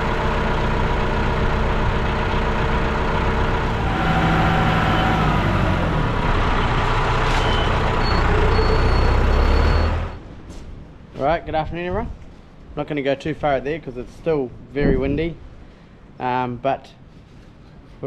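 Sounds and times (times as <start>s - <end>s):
tractor engine running: 0.0s - 10.2s
high beeping tone: 6.5s - 10.2s.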